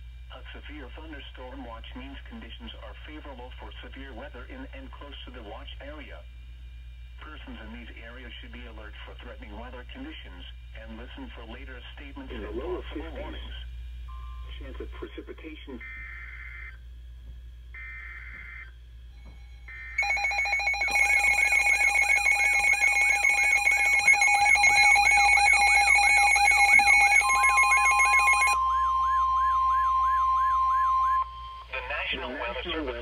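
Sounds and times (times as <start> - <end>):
long warning tone: 8.0 - 33.0
steady beeping tones: 14.0 - 33.0
electronic warbling alarm: 15.8 - 16.9, 17.7 - 32.9
screeching data bursts: 19.5 - 31.8.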